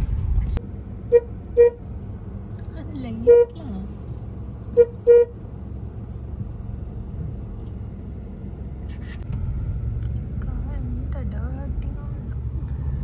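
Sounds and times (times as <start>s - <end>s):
car driving over rough track: 0.0s - 0.7s
car horn toots: 1.1s - 1.8s, 3.2s - 3.6s, 4.7s - 5.4s.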